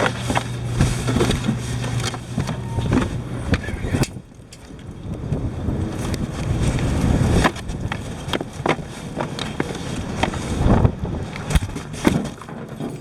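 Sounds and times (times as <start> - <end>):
wind rumbling on microphone: 0.0 - 13.0
knocks and bumps of handling: 11.5 - 13.0.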